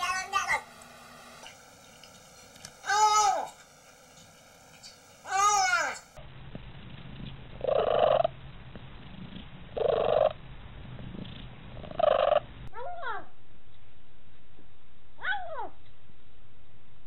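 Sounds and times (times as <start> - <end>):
cat purring: 7.0 - 12.5.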